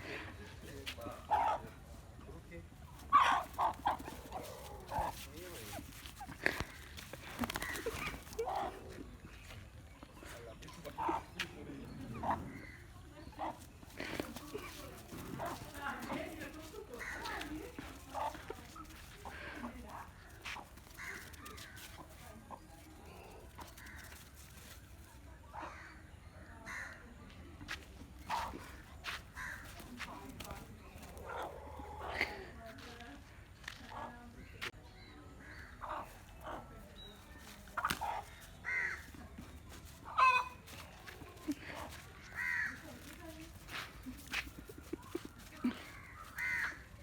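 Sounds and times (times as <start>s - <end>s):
chicken squawking: 40.0s - 41.0s.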